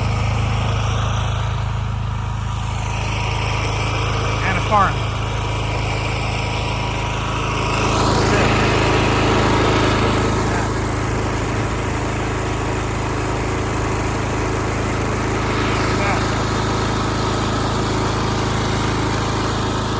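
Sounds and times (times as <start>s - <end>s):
small petrol engine running: 0.0s - 19.9s.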